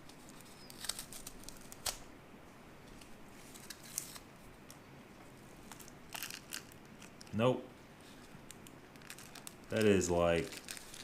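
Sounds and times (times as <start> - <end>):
packet rustling: 0.0 - 2.1, 2.9 - 4.3, 5.6 - 7.4, 8.0 - 11.0.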